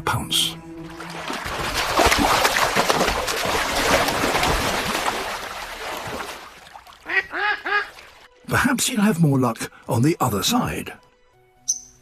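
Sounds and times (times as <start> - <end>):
water splashing: 0.7 - 8.7.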